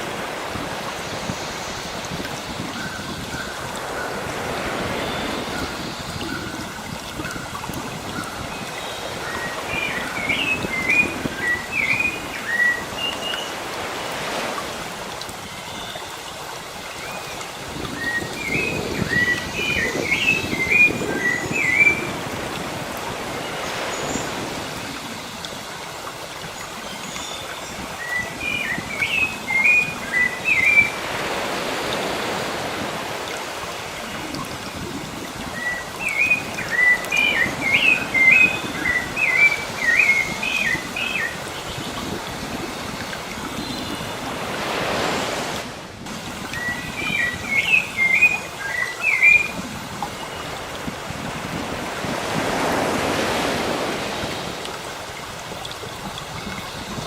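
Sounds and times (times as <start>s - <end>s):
sea waves washing: 0.0s - 57.0s
songbird chirping and whistling: 46.6s - 49.5s.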